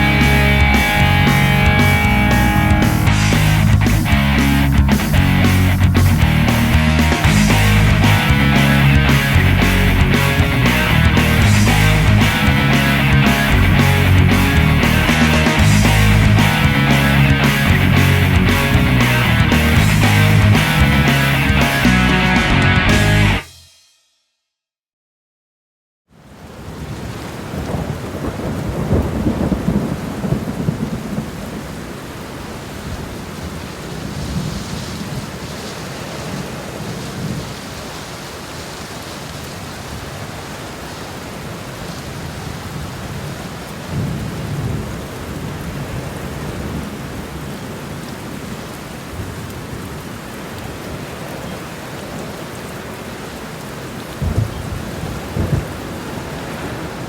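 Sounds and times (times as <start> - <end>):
thunder rumbling: 0.0 - 23.3, 26.7 - 31.9, 43.9 - 47.4, 54.0 - 57.0
steady rain: 0.0 - 23.4, 26.1 - 57.0.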